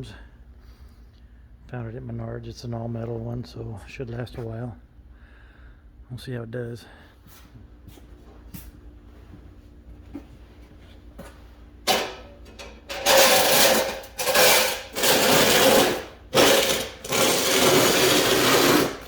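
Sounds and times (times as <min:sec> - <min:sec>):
metal shovel scraping snow: 0:13.0 - 0:19.0.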